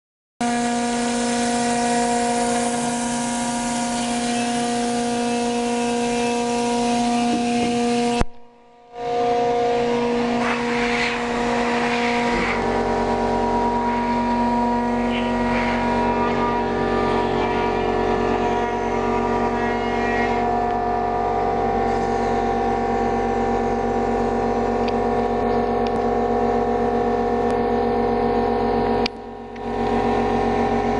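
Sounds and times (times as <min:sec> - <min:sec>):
hiss of cutting foam: 0:00.4 - 0:08.2, 0:10.1 - 0:20.5
router spindle whining: 0:00.4 - 0:30.9
deep rumble: 0:02.0 - 0:30.9.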